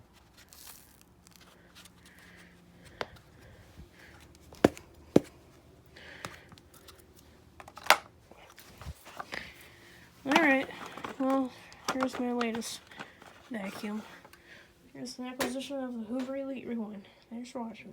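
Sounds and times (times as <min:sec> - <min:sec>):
faint rustling: 0:08.5 - 0:14.6.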